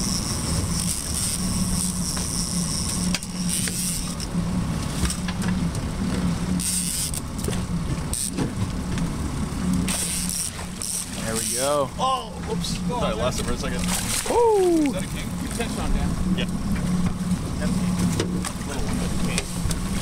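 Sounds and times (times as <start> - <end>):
boat motor humming: 0.0 - 20.0.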